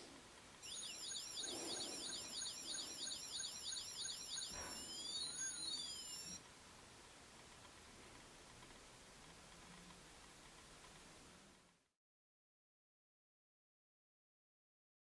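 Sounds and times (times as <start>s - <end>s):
toy electronic siren: 0.6s - 6.4s.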